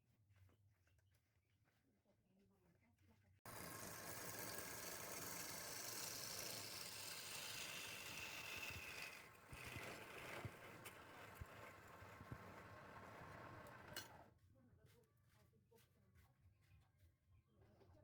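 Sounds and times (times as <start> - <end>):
tool cutting spinning wood: 3.5 - 14.3
wood lathe running: 3.5 - 14.3.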